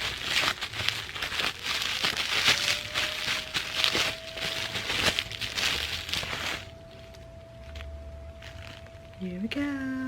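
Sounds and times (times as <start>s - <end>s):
packaging rustling and crinkling: 0.0s - 10.0s.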